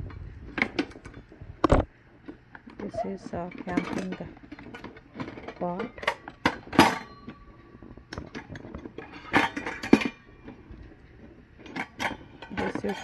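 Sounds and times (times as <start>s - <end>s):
metal cookware clinking: 2.9s - 7.4s, 8.4s - 10.3s, 11.7s - 13.0s.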